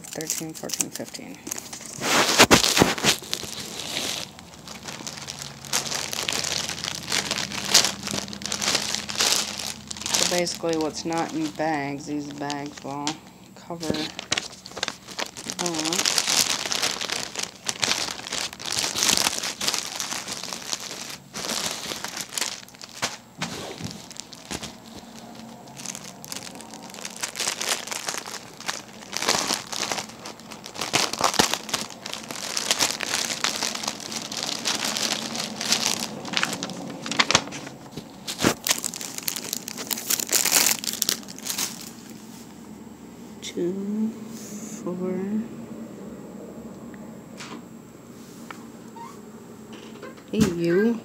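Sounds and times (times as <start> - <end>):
plastic bags crinkling: 0.0 - 42.5.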